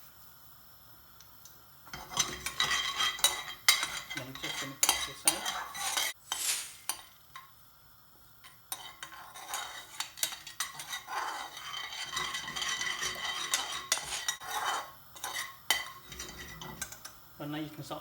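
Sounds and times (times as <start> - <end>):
utensil clinking against pan: 1.9 - 6.2, 8.4 - 17.2
utensil scraping curry in pan: 1.9 - 7.5, 8.4 - 17.2.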